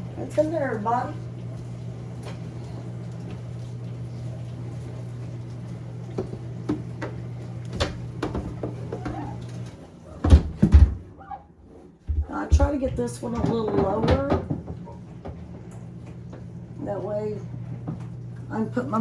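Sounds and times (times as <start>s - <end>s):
refrigerator shelves knocking: 7.8s - 9.4s, 10.2s - 11.2s, 12.0s - 14.8s.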